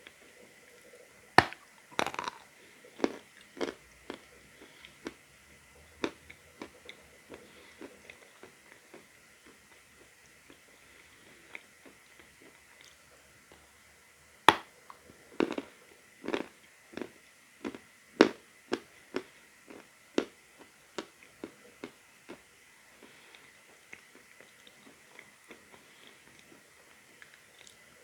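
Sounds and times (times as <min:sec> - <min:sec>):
teeth crunching chalk: 0:01.4 - 0:05.2.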